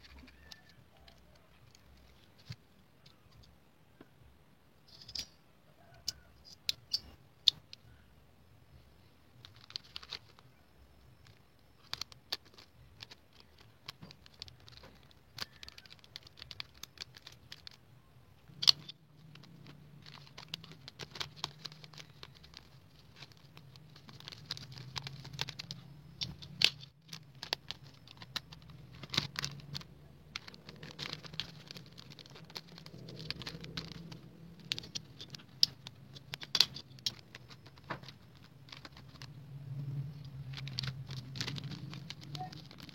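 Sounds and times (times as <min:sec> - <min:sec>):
sharp clicks of small items: 0:00.0 - 0:03.6, 0:04.9 - 0:08.0, 0:09.3 - 0:42.9
faint low hum: 0:00.0 - 0:42.9
plastic packaging crinkling: 0:09.4 - 0:42.9.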